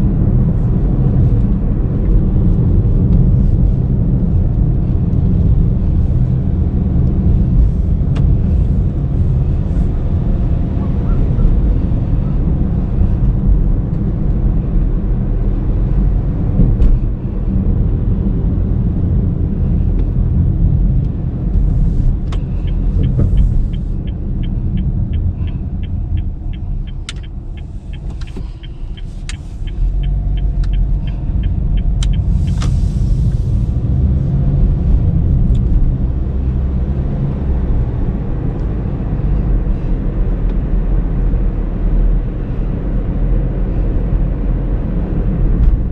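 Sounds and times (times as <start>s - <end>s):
car road and engine rumble: 0.0s - 45.9s
turn-signal indicator ticking: 22.3s - 33.1s.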